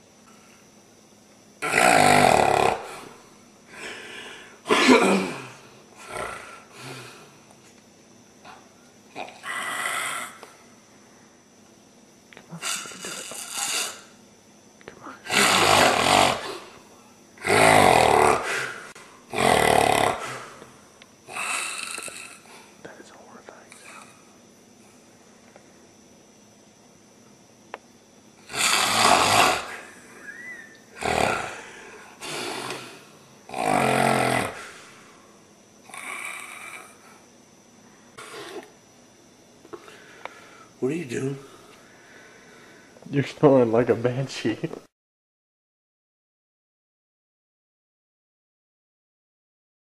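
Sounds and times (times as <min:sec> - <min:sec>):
person snoring heavily: 0:01.6 - 0:07.4, 0:09.2 - 0:10.4, 0:12.5 - 0:14.2, 0:15.2 - 0:16.8, 0:17.4 - 0:20.7, 0:21.3 - 0:22.7, 0:28.4 - 0:35.2, 0:35.8 - 0:37.2.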